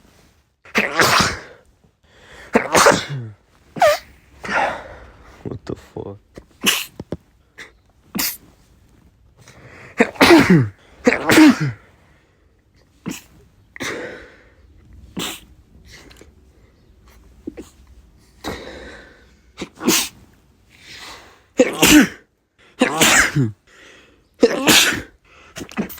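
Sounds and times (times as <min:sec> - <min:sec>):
men sneezing: 0:00.7 - 0:01.6, 0:02.5 - 0:05.2, 0:06.6 - 0:07.0, 0:07.6 - 0:08.5, 0:09.9 - 0:11.9, 0:15.1 - 0:15.5, 0:18.4 - 0:20.3, 0:21.0 - 0:23.6, 0:24.4 - 0:25.9.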